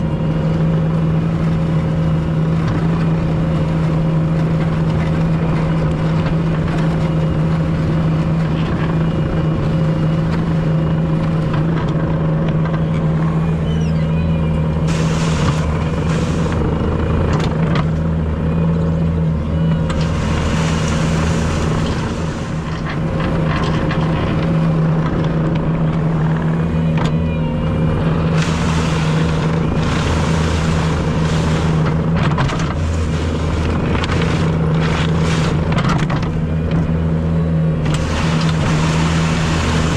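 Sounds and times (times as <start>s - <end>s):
diesel engine running under load: 0.0s - 39.9s
hissing noise: 14.9s - 16.6s.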